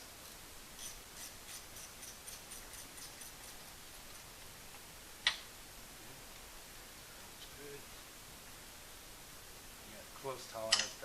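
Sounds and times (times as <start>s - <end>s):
hand ratchet clicking: 0.8s - 3.7s
sharp metal click: 10.7s - 11.0s.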